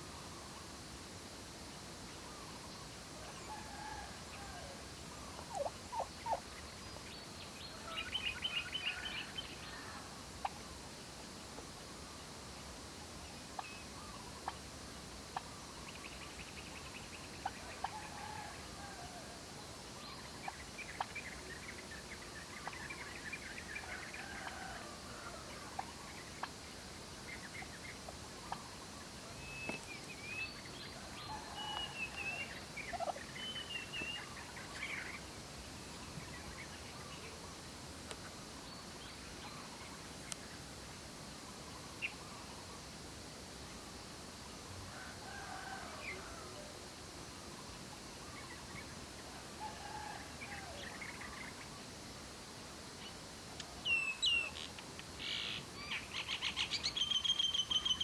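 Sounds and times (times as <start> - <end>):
turkeys calling: 3.3 - 6.7, 17.4 - 19.3, 20.1 - 26.6, 30.6 - 35.2.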